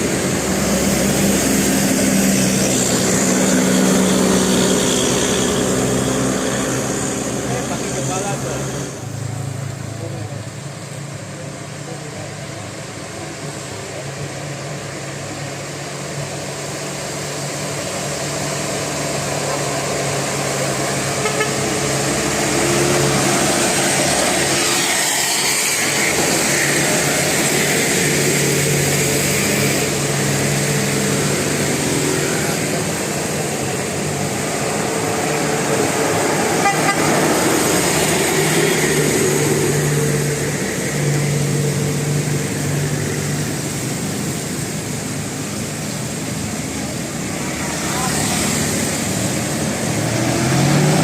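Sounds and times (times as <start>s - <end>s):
bus engines: 0.0s - 51.0s
traffic noise: 0.0s - 51.0s
musical bus air horns: 21.2s - 21.8s, 36.5s - 37.3s.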